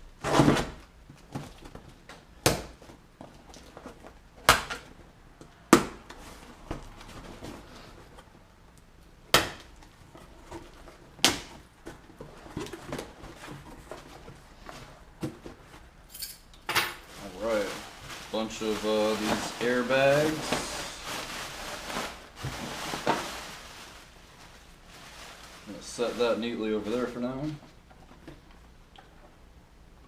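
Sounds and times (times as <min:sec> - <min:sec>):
cardboard rustling: 0:10.0 - 0:15.9, 0:17.1 - 0:28.2.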